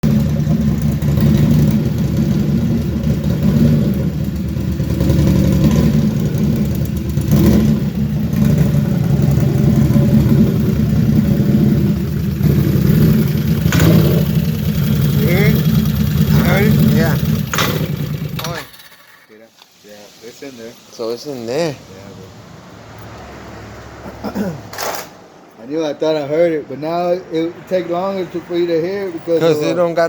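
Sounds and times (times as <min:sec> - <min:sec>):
atv engine running: 0:00.0 - 0:19.2.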